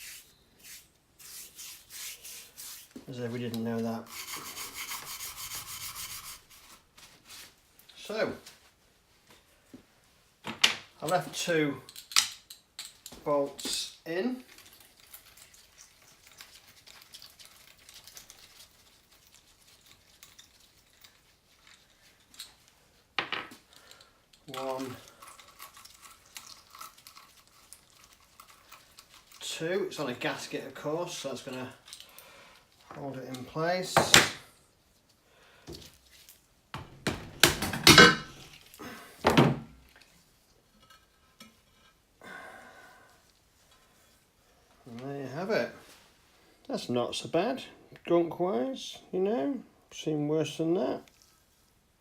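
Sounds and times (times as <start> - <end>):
metallic thunks and knocks: 36.8 - 38.4.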